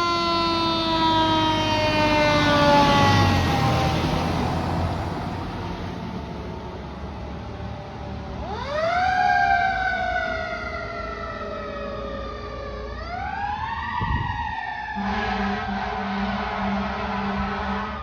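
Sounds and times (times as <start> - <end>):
fire engine siren winding: 0.0 - 5.8, 8.4 - 18.0
air horn blast: 15.0 - 18.0.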